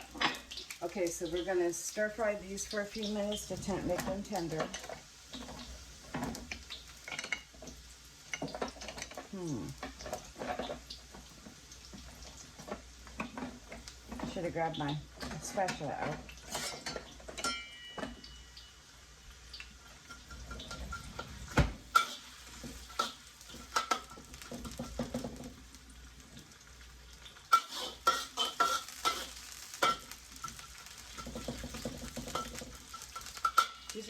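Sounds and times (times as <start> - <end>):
vegetables sizzling in wok: 0.0 - 34.0
spatula scraping pan: 12.6 - 17.7, 19.8 - 25.6, 27.5 - 34.0.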